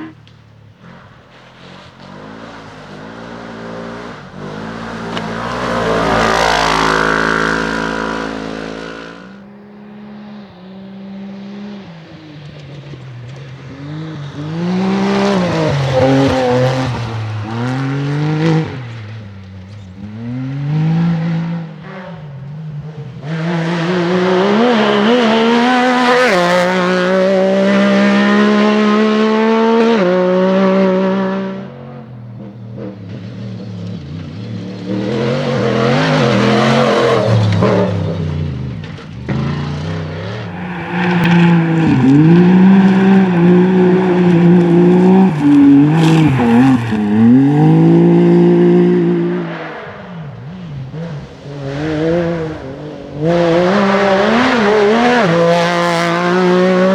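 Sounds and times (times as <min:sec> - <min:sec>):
rally car engine accelerating: 0:00.0 - 0:56.9
passing noise rush: 0:40.2 - 0:48.0.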